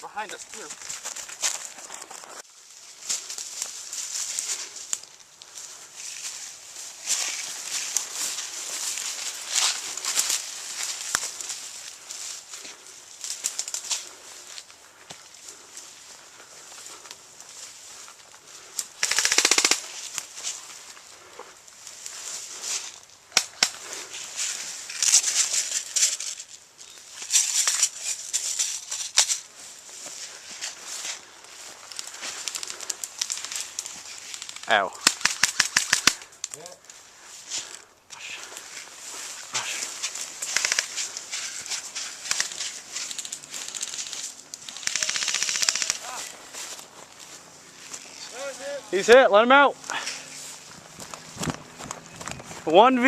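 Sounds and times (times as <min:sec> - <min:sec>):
rustling of brush and dry leaves: 0:00.0 - 0:53.0
sharp cracks: 0:18.7 - 0:20.3, 0:23.3 - 0:24.0, 0:31.9 - 0:36.8, 0:39.5 - 0:46.4
airsoft guns firing bursts: 0:19.0 - 0:20.0, 0:44.8 - 0:46.2.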